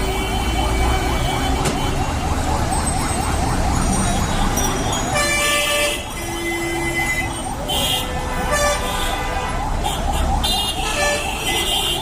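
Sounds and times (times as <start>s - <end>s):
vehicle horns: 4.4s - 12.0s.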